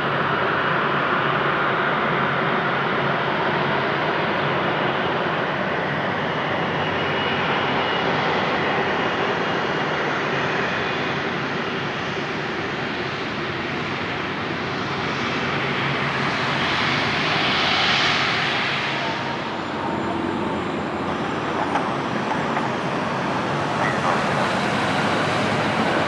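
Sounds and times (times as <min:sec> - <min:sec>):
jet airliner passing by: 0:00.1 - 0:26.0.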